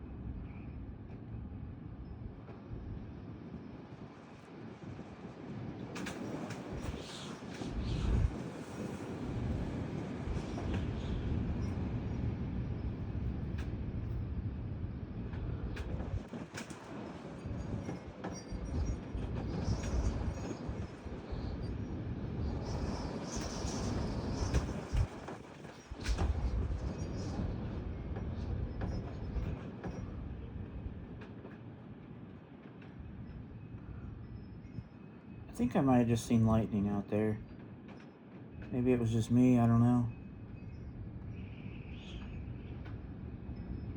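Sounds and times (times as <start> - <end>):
gusty wind buffeting microphone: 0.0 - 36.4
gusty wind rushing: 5.7 - 14.6.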